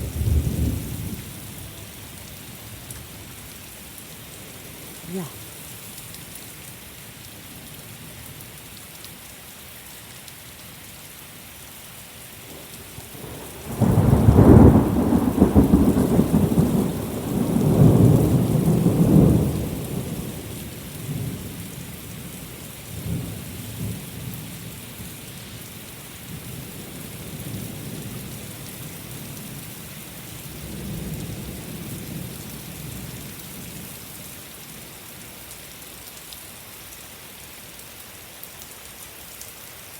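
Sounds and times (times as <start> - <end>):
thunder rumbling: 0.0 - 2.2, 13.0 - 21.6
steady rain hiss: 0.0 - 39.9.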